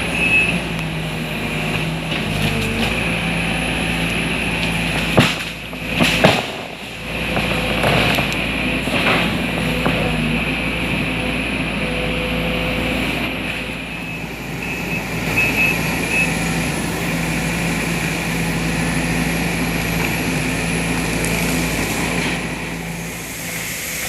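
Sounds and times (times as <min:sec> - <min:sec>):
excavator diesel engine humming: 0:00.0 - 0:24.0
hydraulic high whine: 0:09.6 - 0:24.0.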